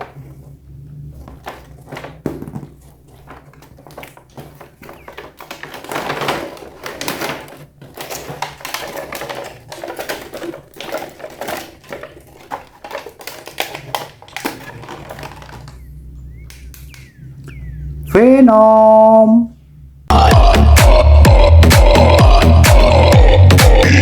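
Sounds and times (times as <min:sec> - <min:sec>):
plastic toy packaging being handled: 0:00.0 - 0:17.2.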